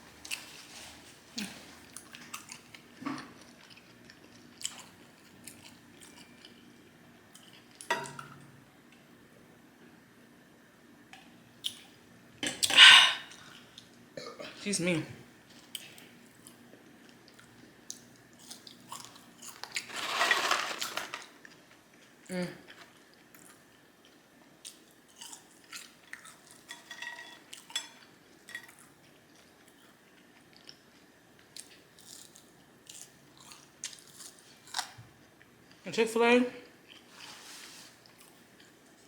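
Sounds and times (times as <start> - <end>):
food crunching and rustling: 0.1 - 7.9, 15.5 - 35.8, 36.8 - 39.0
chewing and mouth sounds: 1.4 - 6.7, 21.5 - 26.7.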